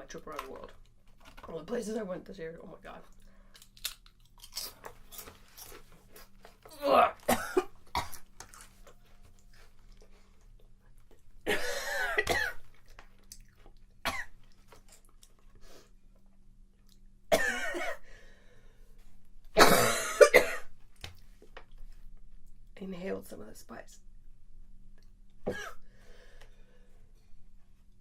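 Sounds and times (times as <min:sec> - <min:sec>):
person coughing: 0:06.9 - 0:08.2, 0:11.5 - 0:12.6, 0:17.3 - 0:18.0, 0:19.6 - 0:20.7, 0:25.5 - 0:25.8.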